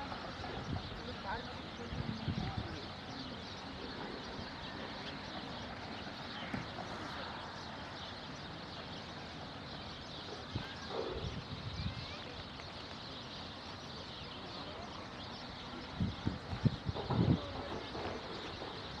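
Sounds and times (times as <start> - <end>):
wind gusts on microphone: 0.0 - 4.6, 10.4 - 12.5, 15.3 - 19.0
birds chirping and screeching: 0.0 - 19.0
wind: 0.0 - 19.0.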